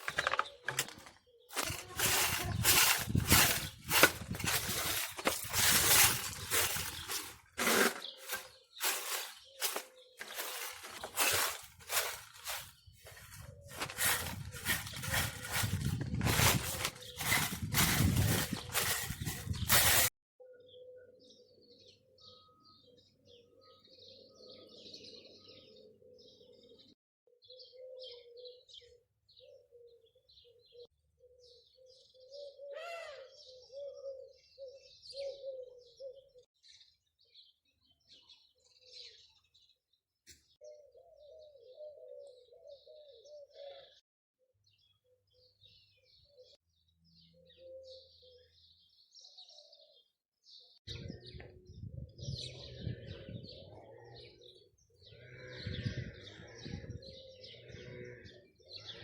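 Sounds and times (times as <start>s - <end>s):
birds chirping: 0.0s - 26.9s.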